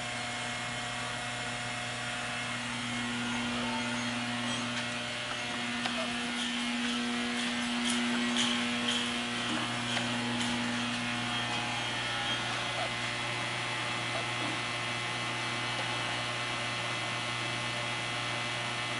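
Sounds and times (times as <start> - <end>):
furnace machine hum: 0.0 - 18.9.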